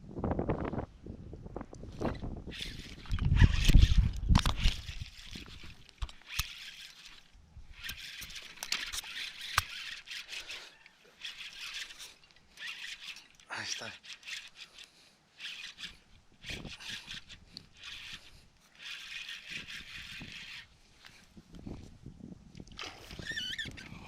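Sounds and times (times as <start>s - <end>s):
wind rumble on microphone: 0.0s - 5.8s, 19.5s - 24.0s.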